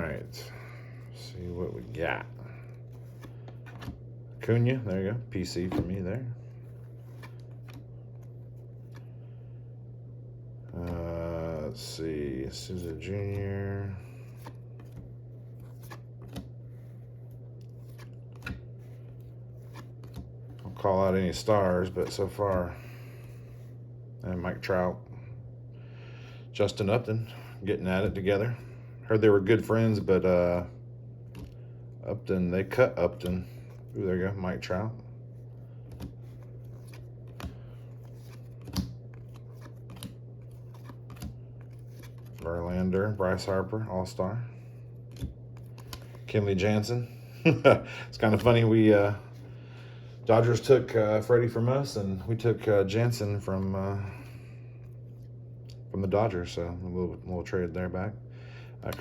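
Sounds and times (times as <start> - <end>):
steady low hum: 0.0 - 59.0
cards flipped through by hand: 1.8 - 4.1, 5.4 - 9.4, 12.5 - 23.6, 35.3 - 43.7, 44.7 - 46.3.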